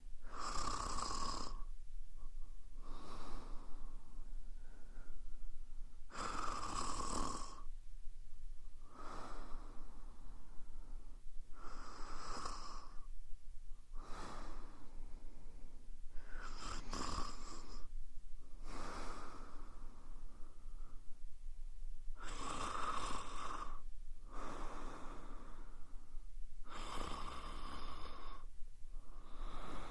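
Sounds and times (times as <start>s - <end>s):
woman snoring: 0.2s - 1.7s, 6.1s - 7.7s, 11.6s - 13.1s, 16.2s - 17.9s, 22.2s - 25.6s, 26.6s - 28.4s.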